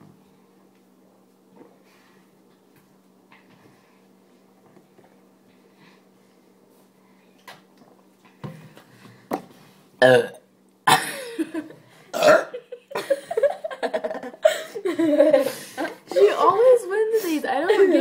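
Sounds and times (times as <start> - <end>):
loud burps: 10.0 - 11.5, 12.1 - 12.6.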